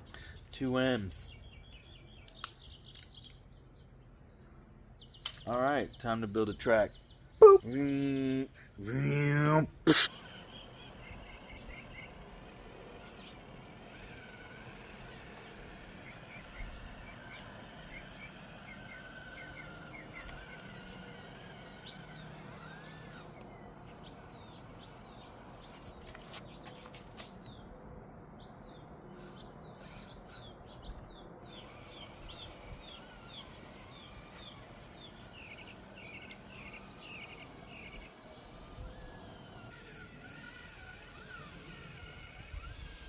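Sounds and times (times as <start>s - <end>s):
small birds chirping: 0.0s - 9.3s, 10.0s - 43.0s
outdoor background hiss: 0.0s - 43.0s.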